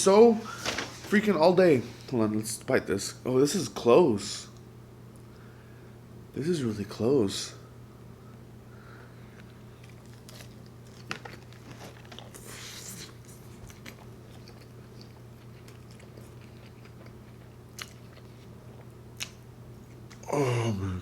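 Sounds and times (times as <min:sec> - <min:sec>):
faint hum: 0:00.0 - 0:21.0
person chewing fries: 0:09.3 - 0:20.3.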